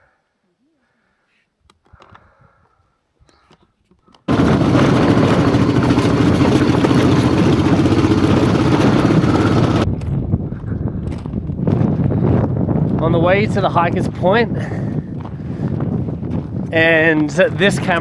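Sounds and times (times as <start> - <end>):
motorcycle engine running: 4.3 - 9.9.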